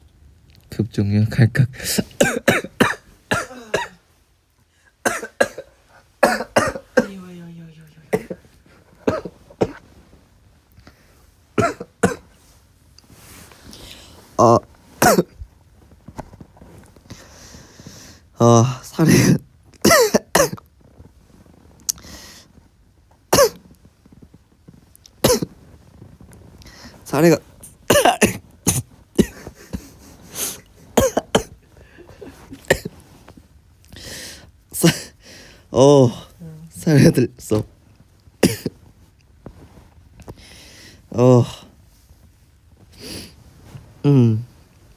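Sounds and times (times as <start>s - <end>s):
man coughing: 1.8s - 4.0s, 5.0s - 7.4s, 8.0s - 9.8s, 11.6s - 12.3s, 14.4s - 15.4s, 19.0s - 20.6s, 23.3s - 23.6s, 25.2s - 25.5s, 27.9s - 33.0s, 34.8s - 35.2s, 38.4s - 38.8s.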